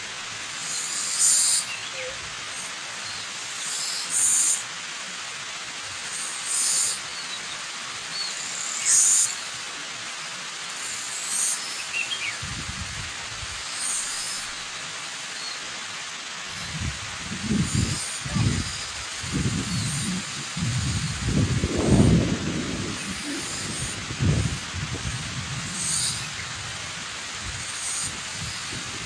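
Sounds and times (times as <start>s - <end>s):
waterfall rushing: 0.0s - 29.0s
birds chirping: 16.6s - 26.6s.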